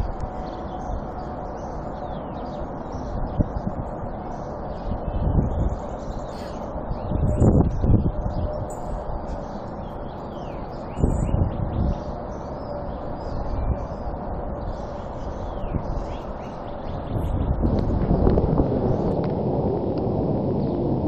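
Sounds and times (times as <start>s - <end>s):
songbirds chirping: 0.0s - 19.3s, 20.4s - 21.0s
low rumble: 16.8s - 21.0s.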